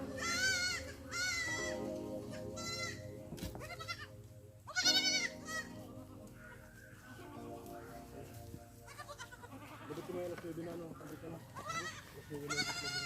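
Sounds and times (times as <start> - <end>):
goats bleating: 0.0 - 1.9, 2.6 - 3.0, 3.6 - 4.1, 4.7 - 13.0
low goat calls: 8.9 - 10.3, 11.0 - 13.0.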